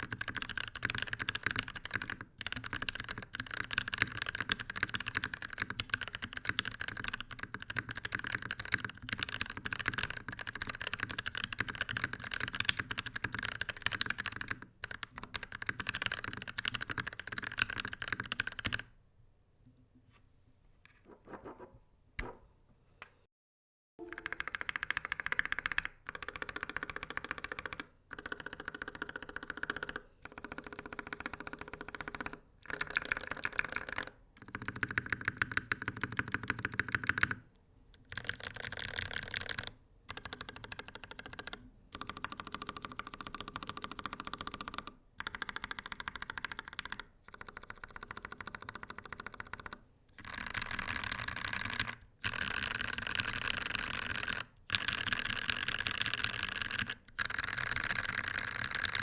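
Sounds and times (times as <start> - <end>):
mechanical keyboard keys clicking: 0.0 - 18.8, 50.4 - 59.0.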